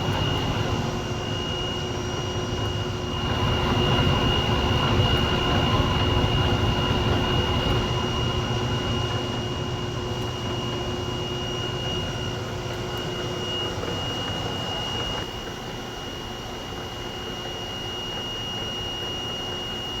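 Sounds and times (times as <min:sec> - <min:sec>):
machine low rumble: 0:00.0 - 0:15.3
machine high whine: 0:00.0 - 0:20.0.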